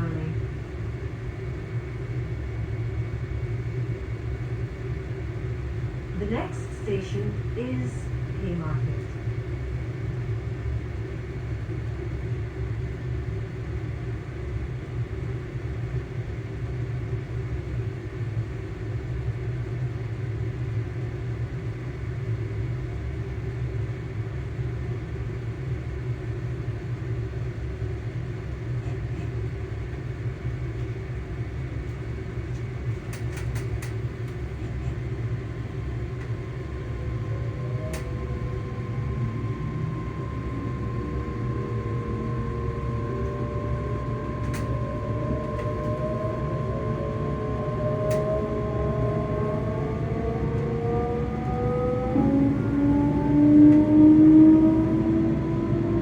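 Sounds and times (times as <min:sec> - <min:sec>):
rising whine: 0:00.0 - 0:14.3, 0:30.6 - 0:56.0
train running rumble: 0:00.0 - 0:56.0
traction motor hum: 0:29.4 - 0:56.0.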